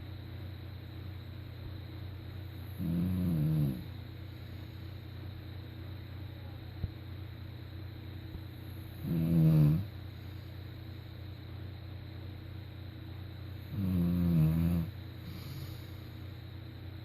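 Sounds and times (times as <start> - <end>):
steady low hum: 0.0 - 17.0
snoring: 2.8 - 3.9, 9.0 - 10.0, 13.7 - 15.9.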